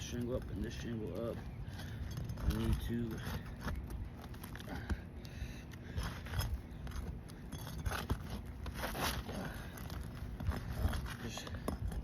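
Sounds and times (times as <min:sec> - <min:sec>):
metal tool scraping roof shingles: 0:06.0 - 0:11.7.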